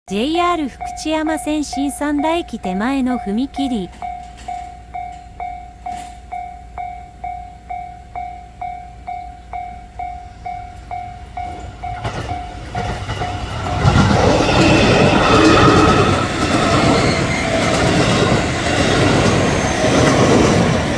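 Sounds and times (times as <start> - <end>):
level-crossing warning bell: 0.1 - 20.9
train rumble: 0.1 - 20.9.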